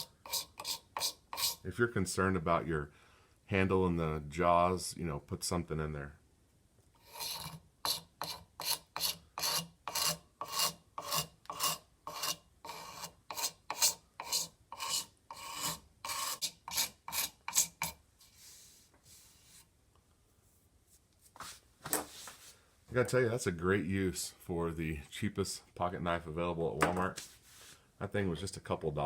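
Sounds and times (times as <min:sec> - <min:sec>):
knife blade scraping wood: 0:00.0 - 0:01.6, 0:07.0 - 0:18.0.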